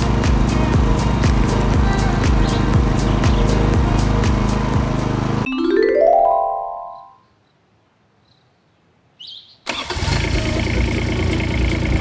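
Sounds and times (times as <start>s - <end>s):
engine chugging: 0.0s - 5.5s, 9.7s - 12.0s
rising musical notes: 0.0s - 7.2s.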